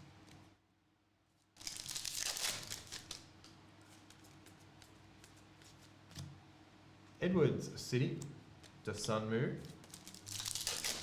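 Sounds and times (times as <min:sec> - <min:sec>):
wrapper crinkling torn open: 0:01.6 - 0:03.3, 0:09.8 - 0:11.0
cards rustling and ticking: 0:09.6 - 0:11.0.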